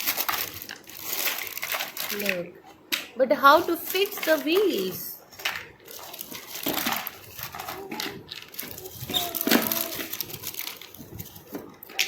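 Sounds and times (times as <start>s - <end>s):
plastic toy parts clicking: 5.4s - 12.0s.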